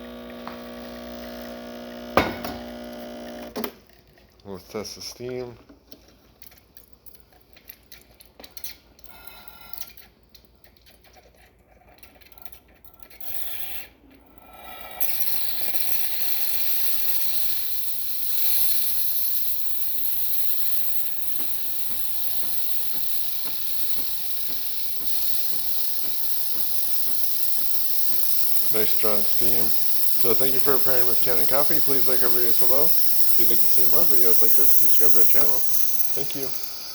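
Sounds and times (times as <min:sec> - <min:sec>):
steam wand hissing: 0:14.9 - 0:36.9
faint clicks and sputters: 0:15.0 - 0:36.9.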